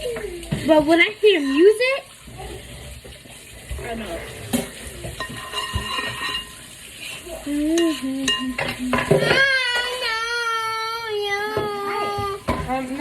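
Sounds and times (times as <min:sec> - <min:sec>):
dishes and utensils clinking: 0:00.0 - 0:10.4, 0:11.4 - 0:13.0
young child crying: 0:09.3 - 0:12.4.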